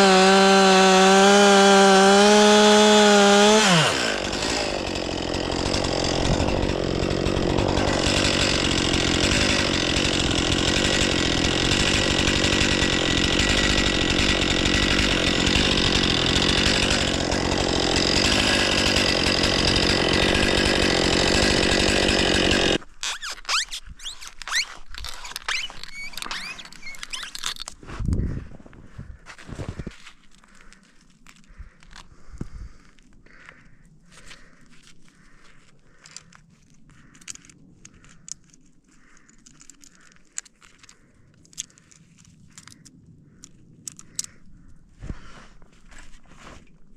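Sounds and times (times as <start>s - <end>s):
chainsaw cutting wood: 0.0s - 27.6s
faint crackling and crunching: 22.8s - 46.9s.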